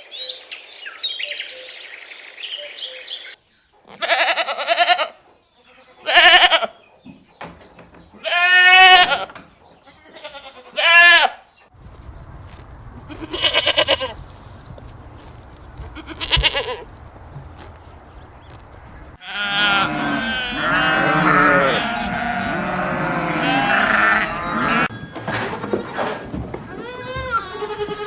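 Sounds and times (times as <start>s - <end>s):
farm animals bleating: 3.9s - 6.8s, 8.1s - 11.5s, 13.0s - 14.2s, 15.7s - 17.0s, 19.0s - 28.0s
birds chirping: 9.2s - 10.8s, 11.4s - 25.0s.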